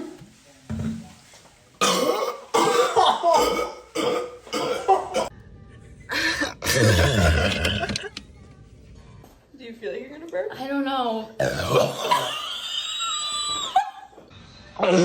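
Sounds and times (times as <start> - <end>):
person belching: 1.8 - 5.3, 6.3 - 8.2, 11.4 - 13.3
person coughing: 1.8 - 5.3.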